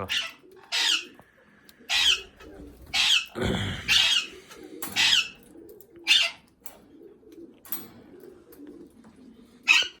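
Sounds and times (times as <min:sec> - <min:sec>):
harsh bird squawk: 0:00.0 - 0:01.2, 0:01.9 - 0:04.4, 0:05.0 - 0:05.4, 0:06.0 - 0:06.5.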